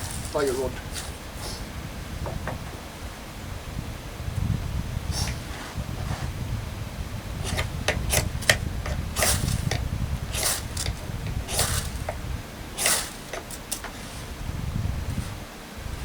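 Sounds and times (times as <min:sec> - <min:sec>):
low wind rumble on microphone: 0:00.0 - 0:16.0
striker scraping ferrocerium rod: 0:07.4 - 0:14.4.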